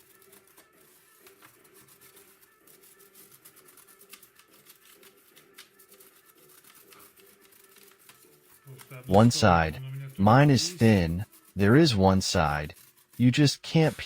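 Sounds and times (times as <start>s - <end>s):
faint steady hum: 9.1s - 14.0s.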